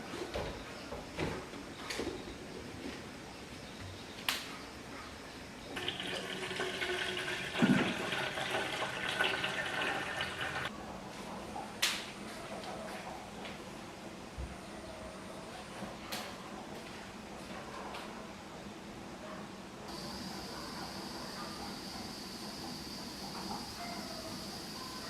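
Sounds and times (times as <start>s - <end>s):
water running from tap: 5.8s - 10.7s.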